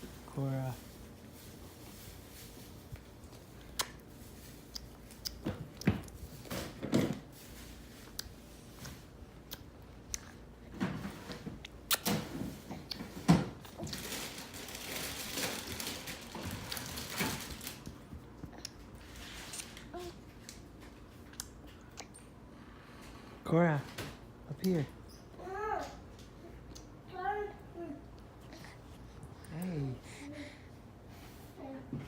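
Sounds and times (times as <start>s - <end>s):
rustling: 13.2s - 18.0s
breathy noises: 28.4s - 31.8s.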